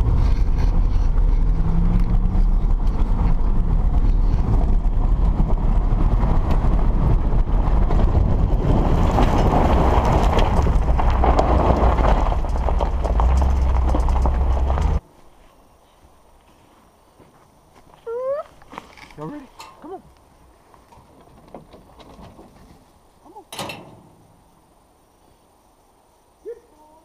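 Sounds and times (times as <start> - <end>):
vehicle engine rumble: 0.0 - 15.4
rattling and clatter: 8.4 - 15.0.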